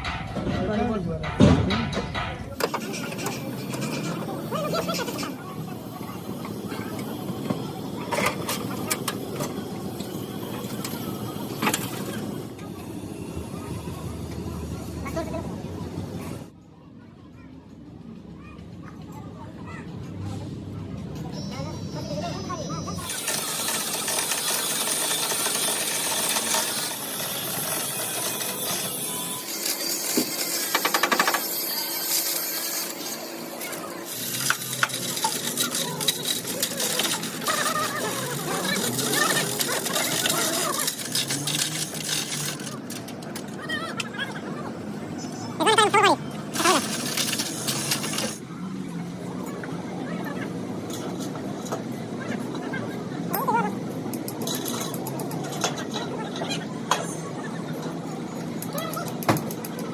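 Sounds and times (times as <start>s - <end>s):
metal hand tools clinking: 23.3s - 43.5s.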